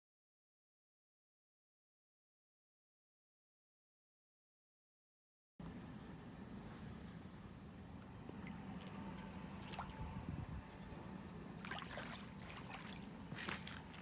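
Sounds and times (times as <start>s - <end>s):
steady low hum: 5.6s - 14.0s
water trickling and lapping: 8.1s - 10.2s, 11.4s - 14.0s.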